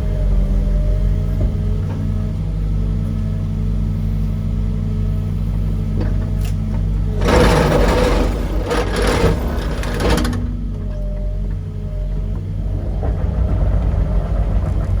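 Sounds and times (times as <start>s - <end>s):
diesel engine running: 0.0s - 15.0s
vibratory hammer buzzing rattle: 7.2s - 11.4s.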